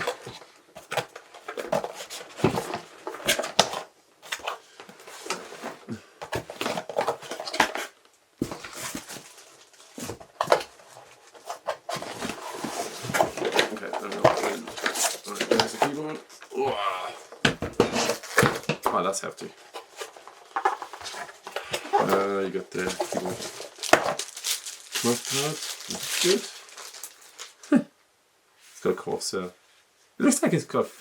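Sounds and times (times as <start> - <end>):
cardboard box scraping and rustling: 0.0 - 16.0, 17.6 - 18.7, 19.7 - 27.2.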